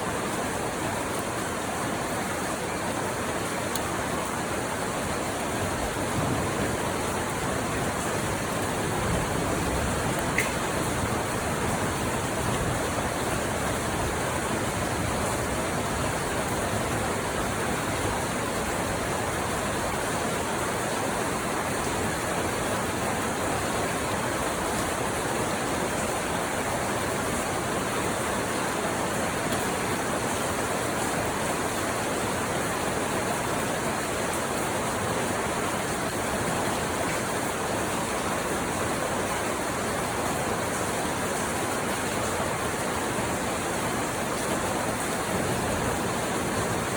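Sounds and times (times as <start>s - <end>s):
heavy rainfall: 0.0s - 46.9s.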